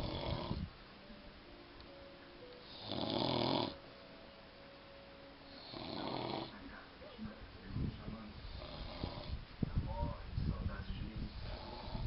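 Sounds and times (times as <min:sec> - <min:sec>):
person snoring: 0:00.0 - 0:00.7, 0:02.6 - 0:03.8, 0:05.5 - 0:06.6, 0:08.4 - 0:09.4, 0:11.3 - 0:12.0.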